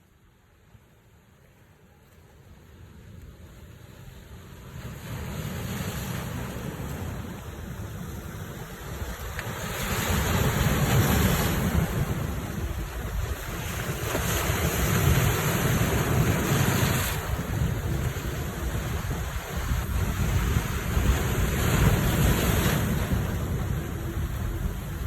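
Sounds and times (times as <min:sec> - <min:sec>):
sea waves washing ashore: 0:00.5 - 0:25.0
wind buffeting microphone: 0:05.0 - 0:25.0.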